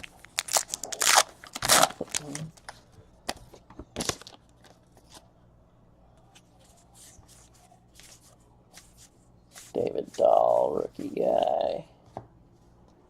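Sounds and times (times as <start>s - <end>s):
soft brushing scrapes: 6.3s - 11.5s.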